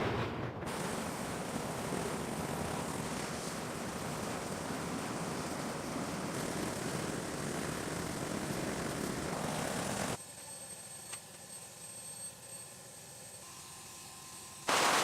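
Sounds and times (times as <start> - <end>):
heavy seas: 0.0 - 8.4
storm wind roaring: 0.0 - 10.1.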